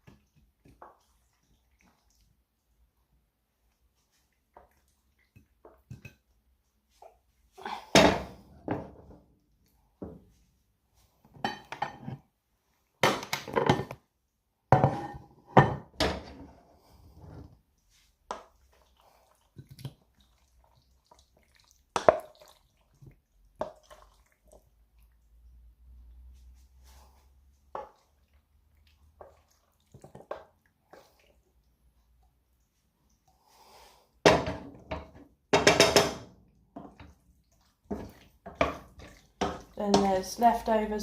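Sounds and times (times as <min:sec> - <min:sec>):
dishes and cutlery clinking: 0:11.4 - 0:12.2.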